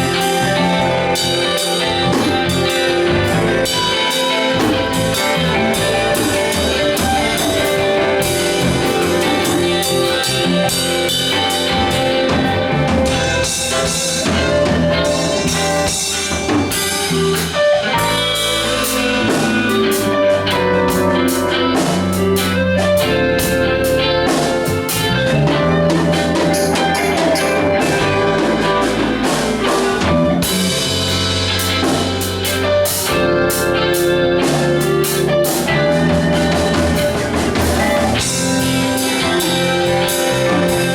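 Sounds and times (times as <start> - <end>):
bass line: 0.0 - 40.9
drum kit: 0.0 - 40.9
electric guitar: 0.0 - 40.9.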